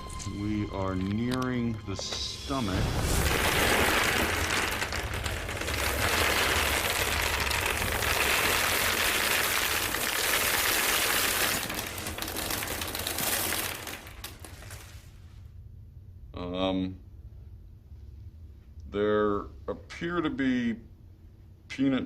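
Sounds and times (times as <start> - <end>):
candies clattering out: 3.0 - 15.2.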